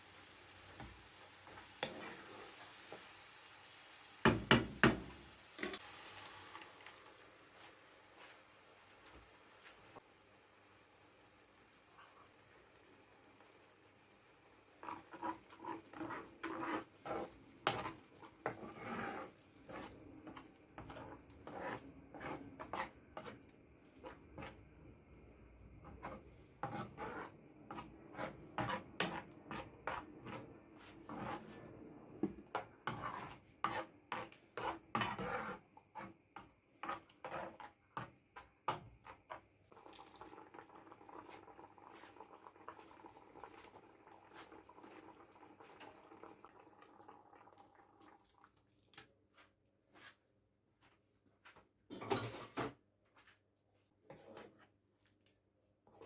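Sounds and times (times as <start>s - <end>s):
metal utensil scraping a pot: 14.8s - 23.4s, 25.8s - 31.6s, 32.5s - 37.7s, 51.9s - 52.7s.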